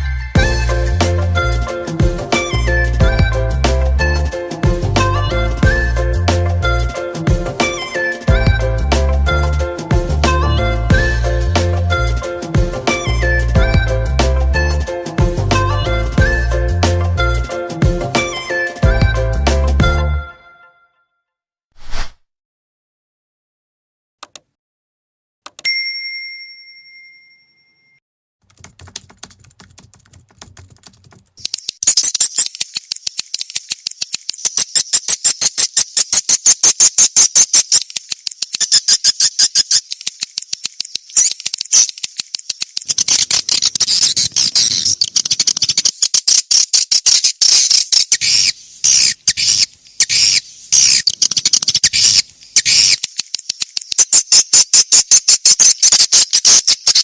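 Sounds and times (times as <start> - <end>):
rapid high bird chirps: 31.4 - 57.0.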